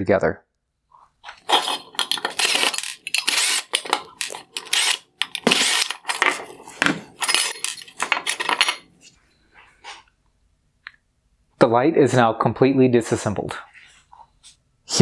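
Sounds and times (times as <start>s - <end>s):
metal screws and plastic parts clinking: 1.4s - 9.1s.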